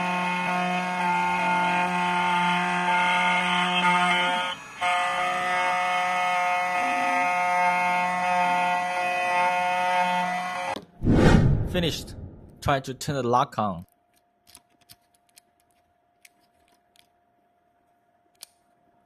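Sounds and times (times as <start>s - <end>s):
key cutting machine whine: 0.0s - 10.7s.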